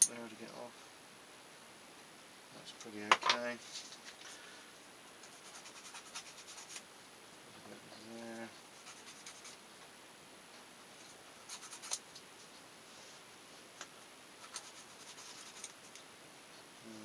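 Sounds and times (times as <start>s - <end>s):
faint scratching of plastic part: 14.4s - 16.0s.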